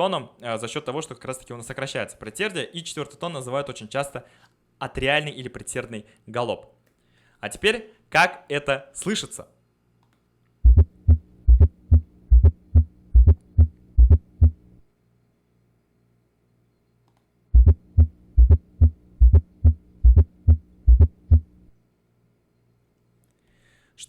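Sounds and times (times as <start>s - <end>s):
faint steady hum: 9.6s - 24.0s
heartbeat with galloping rhythm: 10.6s - 14.6s, 17.6s - 21.6s.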